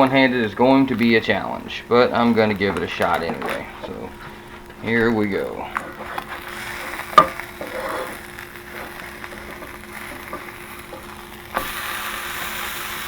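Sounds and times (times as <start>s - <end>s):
sandwich sizzling in a pan: 0.0s - 13.0s.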